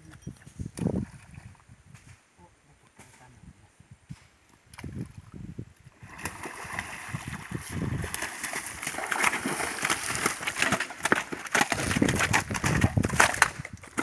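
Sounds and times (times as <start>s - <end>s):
water splashing and sloshing: 4.7s - 14.0s.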